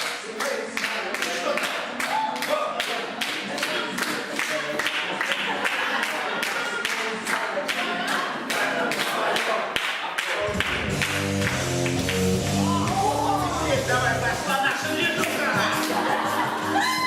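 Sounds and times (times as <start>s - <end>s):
clapped beat: 0.0s - 13.1s, 15.2s - 16.9s
people singing: 2.9s - 10.6s, 12.9s - 17.0s.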